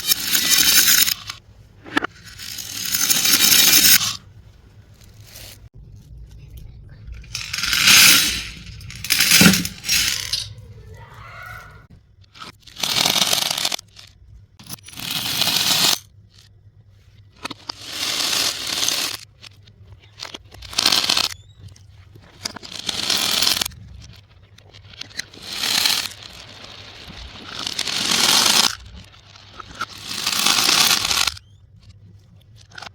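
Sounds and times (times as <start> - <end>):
plastic beads pouring and rattling: 0.0 - 1.3, 2.2 - 4.2, 7.2 - 10.5, 25.3 - 31.3.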